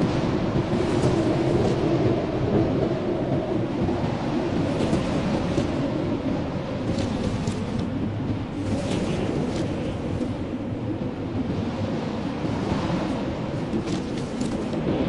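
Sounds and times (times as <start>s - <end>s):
blizzard wind rushing: 0.0s - 15.0s.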